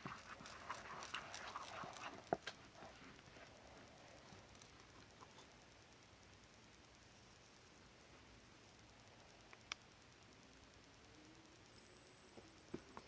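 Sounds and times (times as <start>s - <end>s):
small clicks: 8.7s - 13.0s.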